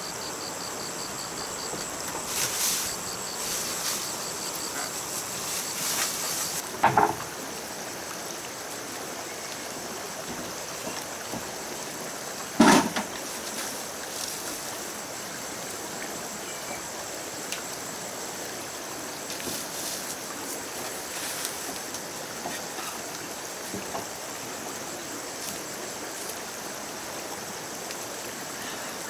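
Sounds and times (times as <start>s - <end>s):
high insect buzzing: 0.0s - 6.6s
forest ambience hiss: 0.0s - 29.0s.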